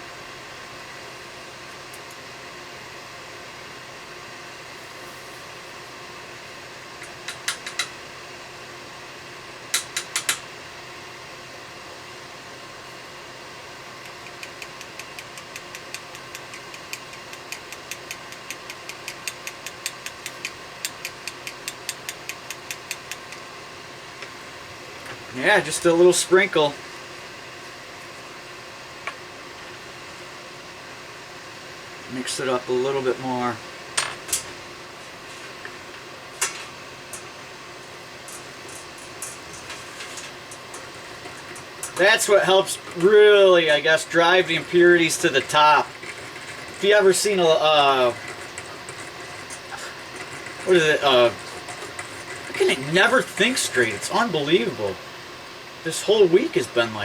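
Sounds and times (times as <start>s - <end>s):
hot-air gun fan humming: 0.0s - 57.0s
rapid light clicks: 14.0s - 23.5s.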